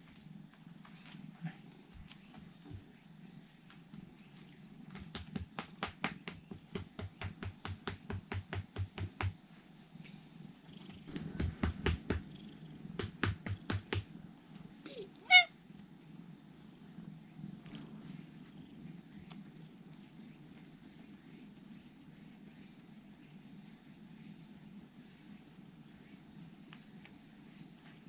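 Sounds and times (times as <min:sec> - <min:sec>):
cat meowing: 0:14.9 - 0:15.5.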